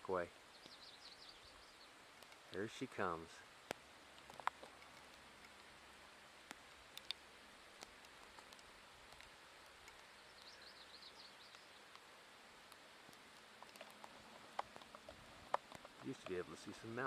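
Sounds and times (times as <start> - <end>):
faint outdoor hiss: 0.0 - 17.0
small bird chirping: 0.4 - 2.5, 8.4 - 12.1
soft clicks: 6.4 - 7.2.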